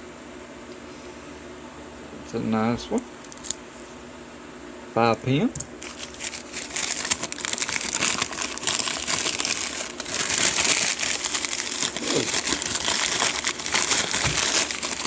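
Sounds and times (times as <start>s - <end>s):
wrapping material crinkling: 5.8s - 15.0s.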